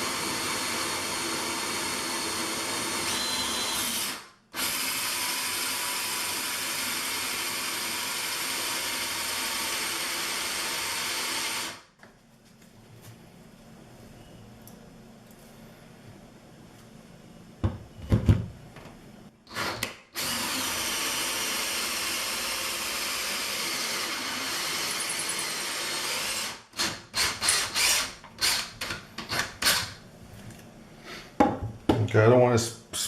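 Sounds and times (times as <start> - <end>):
drill with hole saw cutting: 0.0 - 11.8, 19.5 - 30.0.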